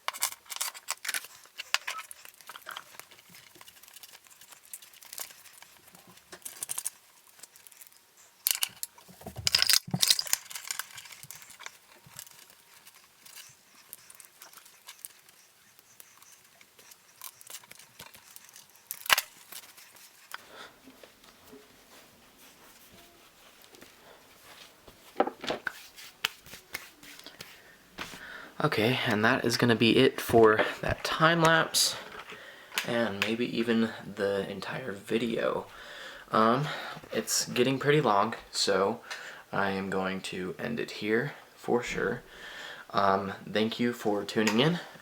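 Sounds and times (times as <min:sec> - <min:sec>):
small parts clicking and rattling: 0:00.0 - 0:20.4.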